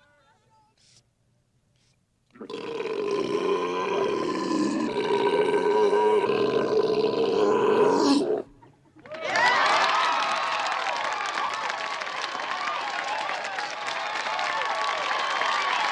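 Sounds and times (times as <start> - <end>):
long loud belch: 2.4 - 8.5
crowd cheering and shouting: 9.0 - 15.9.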